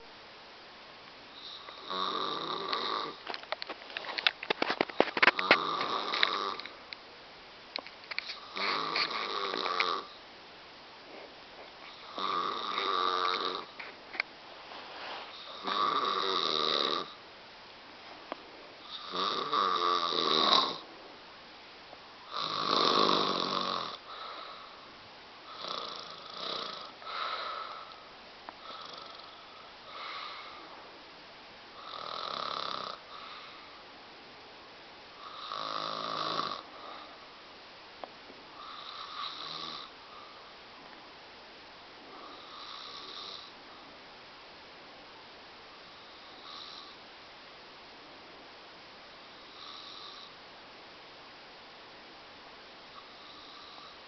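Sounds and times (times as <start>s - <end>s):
woman snoring: 1.4s - 3.3s, 5.1s - 6.7s, 8.3s - 10.2s, 11.9s - 13.8s, 15.4s - 17.2s, 18.8s - 20.9s, 22.3s - 24.8s, 25.5s - 28.0s, 28.6s - 30.6s, 31.8s - 33.6s, 35.2s - 37.1s, 38.6s - 39.9s, 42.1s - 43.6s, 46.2s - 47.0s, 49.4s - 50.3s, 53.0s - 54.0s.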